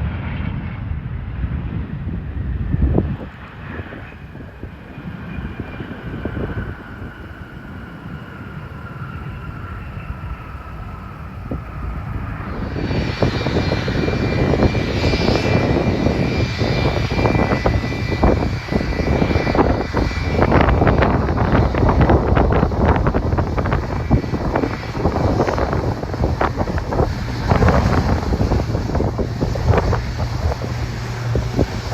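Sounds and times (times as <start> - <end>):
airplane engine whine: 0.0 - 31.9.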